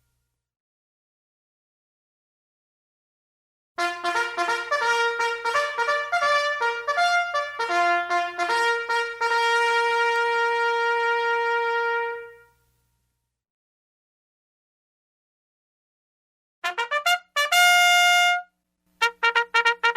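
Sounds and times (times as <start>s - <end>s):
bugle call: 3.8s - 12.5s, 16.6s - 19.9s.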